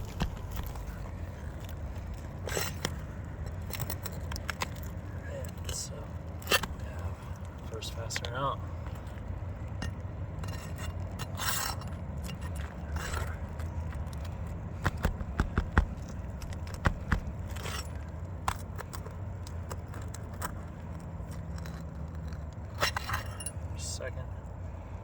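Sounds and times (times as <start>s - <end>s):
pry bar scraping under shingles: 0.0s - 23.9s
sharp taps: 14.8s - 17.4s.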